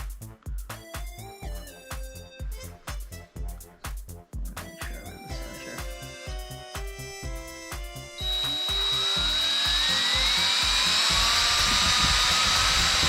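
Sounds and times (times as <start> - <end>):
background music with a beat: 0.0 - 13.0
power drill whining: 7.6 - 13.0.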